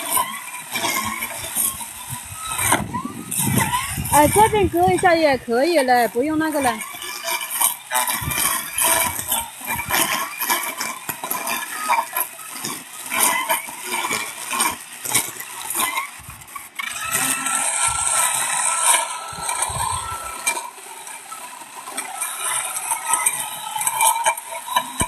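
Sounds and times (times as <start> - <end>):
grass being cut: 0.0 - 25.0.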